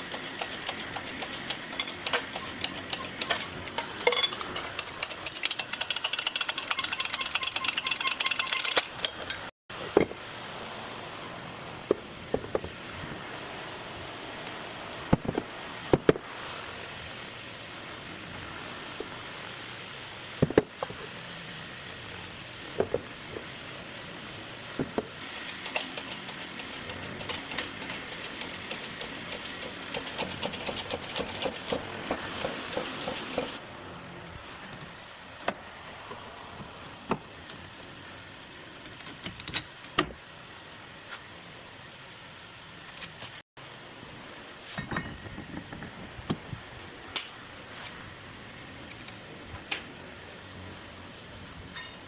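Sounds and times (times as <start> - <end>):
tool clicking and rattling: 0.0 - 9.5, 25.2 - 33.6.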